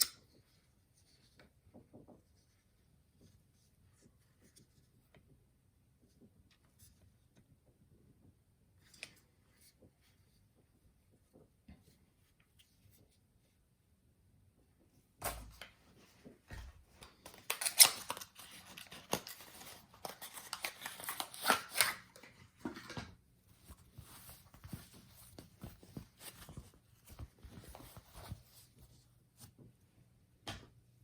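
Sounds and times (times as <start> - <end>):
packaging rustling: 16.9 - 28.8.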